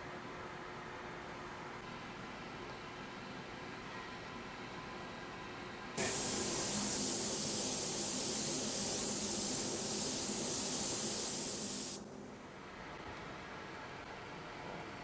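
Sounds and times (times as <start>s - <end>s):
paint spray gun hissing: 6.0s - 12.1s.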